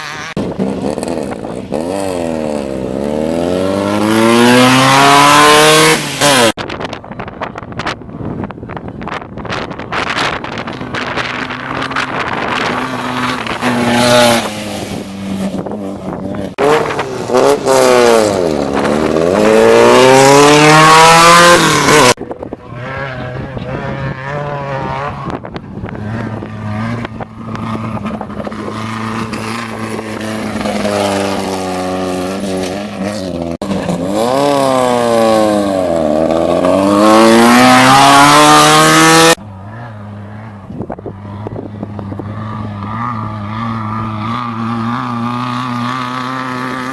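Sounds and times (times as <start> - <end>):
race buggy engines passing: 0.0 - 46.9.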